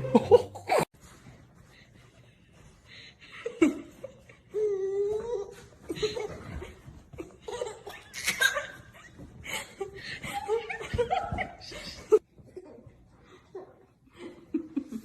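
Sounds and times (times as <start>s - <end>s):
person laughing: 0.0s - 0.9s.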